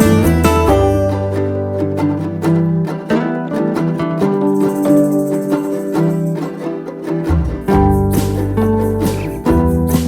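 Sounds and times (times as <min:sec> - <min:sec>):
plucked string music: 0:00.0 - 0:10.0
held low bass note: 0:07.3 - 0:10.0.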